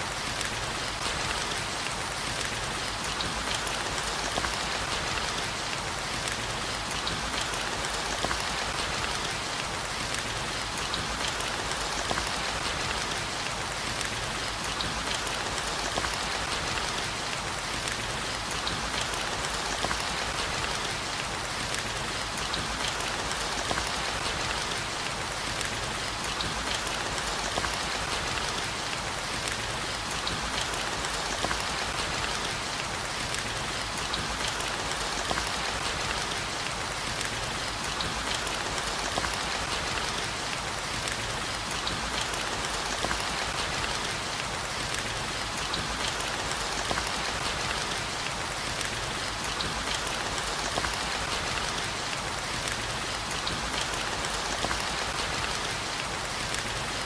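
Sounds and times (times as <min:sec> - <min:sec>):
heavy rain on hard surfaces: 0:00.0 - 0:57.0.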